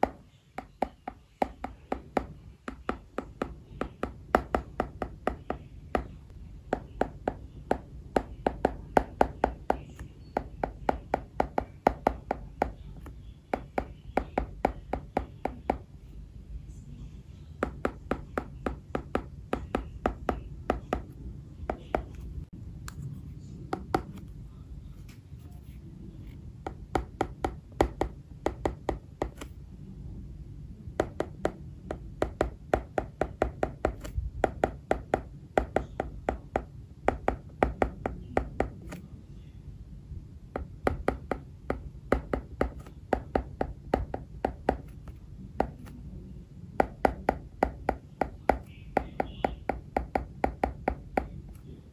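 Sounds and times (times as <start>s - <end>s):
low steady hum: 0.0s - 51.9s
stylus tapping on glass screen: 40.5s - 45.9s.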